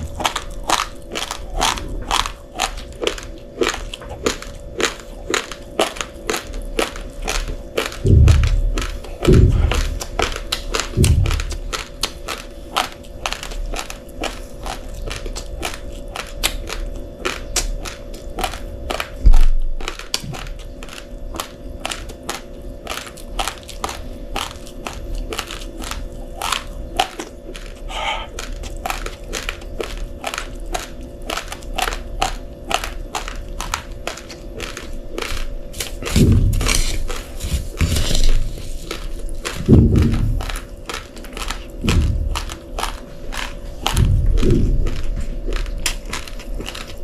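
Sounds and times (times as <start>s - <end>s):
steady hum: 0.0s - 47.0s
rice grains crunching: 19.8s - 47.0s
loud thump: 39.6s - 40.4s.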